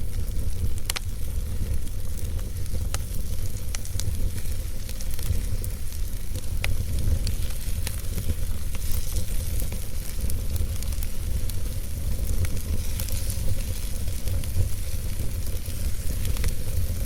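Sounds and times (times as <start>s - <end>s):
campfire crackling and popping: 0.0s - 17.0s
fire hissing: 0.0s - 17.0s.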